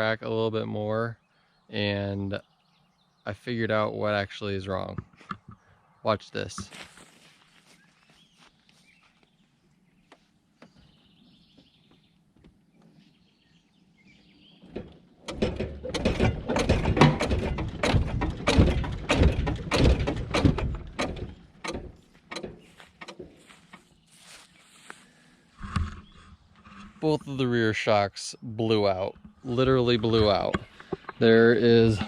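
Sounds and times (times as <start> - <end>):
suspension clunking and rattling: 14.6 - 23.9, 29.1 - 32.0.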